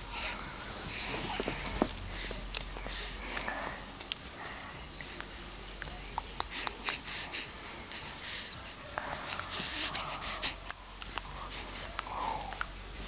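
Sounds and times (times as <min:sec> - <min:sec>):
rapid sniffing: 0:06.2 - 0:13.0.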